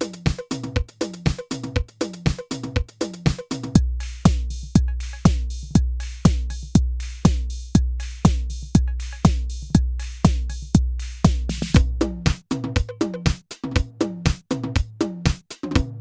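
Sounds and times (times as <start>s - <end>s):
booming drum machine kick: 1.8s - 16.0s
pitched percussion hits falling: 3.8s - 13.4s.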